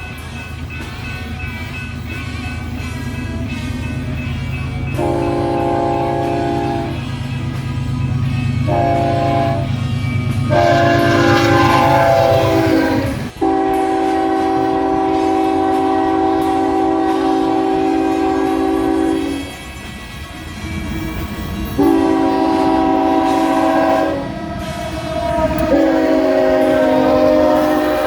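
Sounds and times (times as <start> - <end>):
moving train rumble: 0.0 - 28.0
train air horn blasts: 4.9 - 19.5, 21.7 - 28.0.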